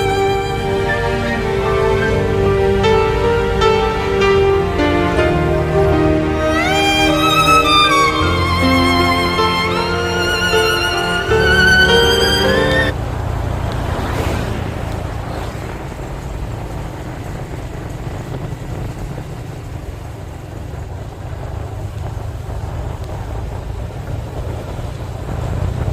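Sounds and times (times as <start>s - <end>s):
violin tune: 0.0s - 13.0s
vehicle low rumble: 0.0s - 25.9s
wind noise: 0.0s - 25.9s.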